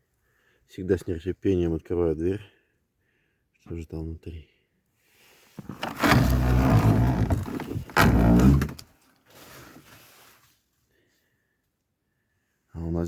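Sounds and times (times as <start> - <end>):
wooden door scraping creak: 5.6 - 8.9.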